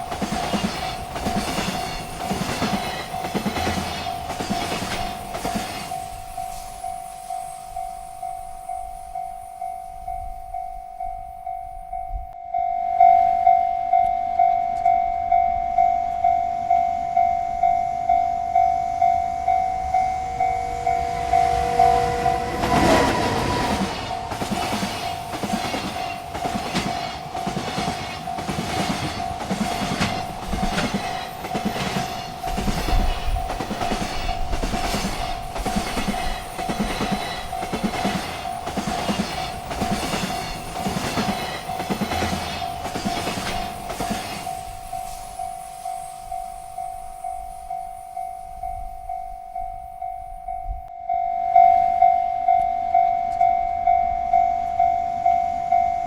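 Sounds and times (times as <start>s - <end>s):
freight train wheels clattering: 0.0s - 8.0s, 19.3s - 47.6s
railroad crossing bell ringing: 0.0s - 56.0s.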